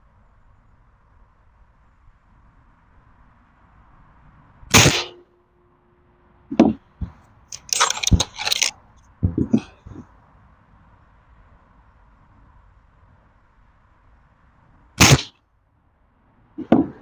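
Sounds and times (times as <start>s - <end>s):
air rifle shot with ringing: 4.7s - 5.2s, 6.6s - 8.7s, 15.0s - 15.3s
rifle handling clicks: 7.6s - 8.7s.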